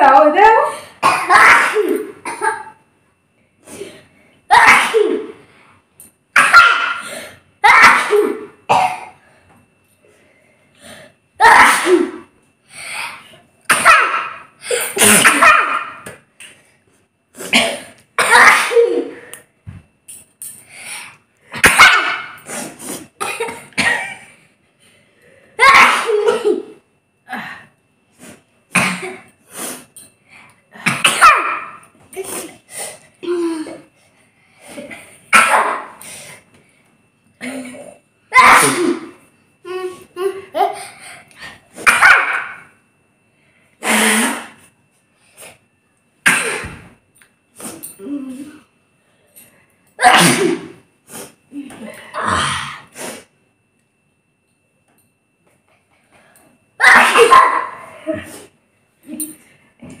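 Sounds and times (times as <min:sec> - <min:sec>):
people sneezing: 0:01.0 - 0:02.7, 0:03.6 - 0:05.4, 0:06.4 - 0:09.2, 0:11.4 - 0:12.3, 0:12.9 - 0:16.1, 0:17.4 - 0:19.3, 0:21.5 - 0:24.3, 0:25.6 - 0:27.5, 0:30.8 - 0:33.1, 0:34.7 - 0:36.4, 0:37.4 - 0:39.2, 0:41.7 - 0:42.6, 0:43.8 - 0:44.7, 0:46.2 - 0:46.9, 0:50.0 - 0:51.4, 0:56.8 - 0:58.6
people coughing: 0:01.0 - 0:02.8, 0:04.5 - 0:05.4, 0:07.6 - 0:09.2, 0:13.7 - 0:16.0, 0:17.4 - 0:19.2, 0:23.2 - 0:24.3, 0:25.6 - 0:26.8, 0:28.8 - 0:29.3, 0:30.8 - 0:31.7, 0:34.8 - 0:36.0, 0:37.4 - 0:39.2, 0:46.2 - 0:46.9, 0:50.0 - 0:50.8, 0:56.8 - 0:58.4.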